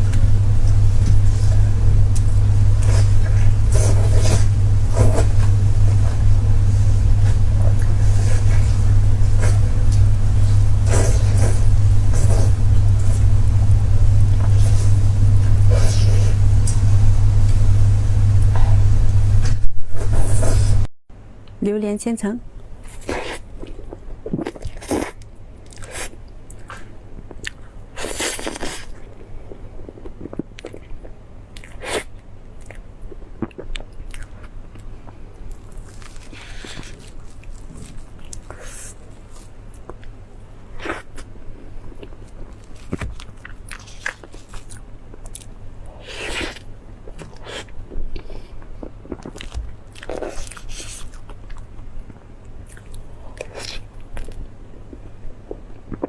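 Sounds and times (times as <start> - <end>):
biting and wet chewing: 0.0 - 20.8, 29.8 - 40.1, 41.9 - 56.0
loud steady low hum: 0.0 - 20.9.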